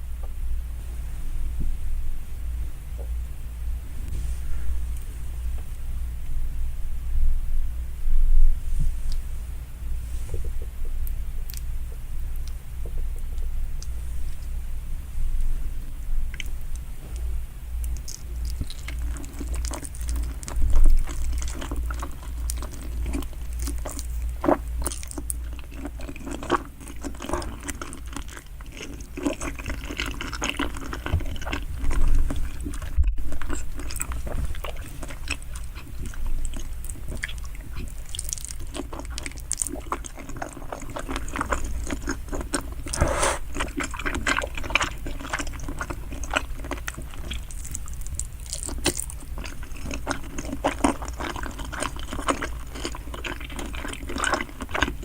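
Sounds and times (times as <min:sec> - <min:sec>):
low hum: 0:00.0 - 0:25.1
chewing and biting food: 0:16.3 - 0:55.0.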